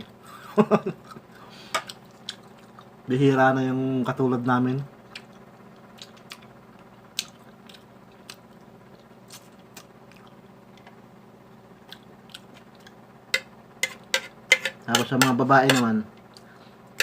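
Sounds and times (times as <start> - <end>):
person chewing food: 1.0 - 3.0, 5.1 - 11.0, 11.8 - 13.0.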